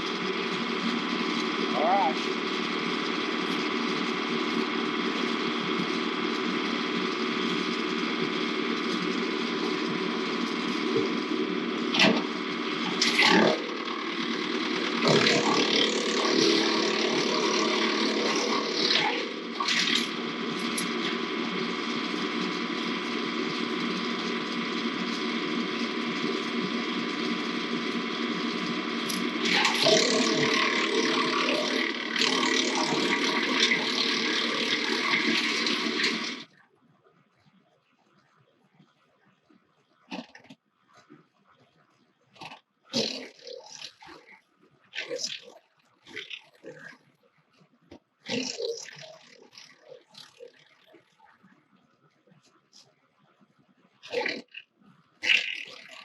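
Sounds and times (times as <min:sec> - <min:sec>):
wood chipper running: 0:00.0 - 0:36.5, 0:55.2 - 0:56.0.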